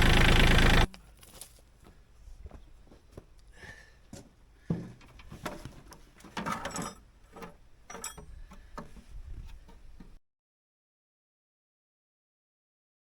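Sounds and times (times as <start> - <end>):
tools clicking and knocking: 4.8 - 10.2.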